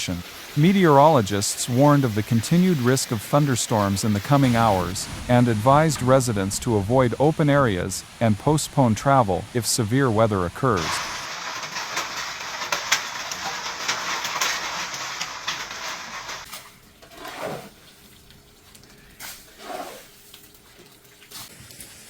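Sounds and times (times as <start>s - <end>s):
heavy rain on a hard surface: 0.0s - 16.5s.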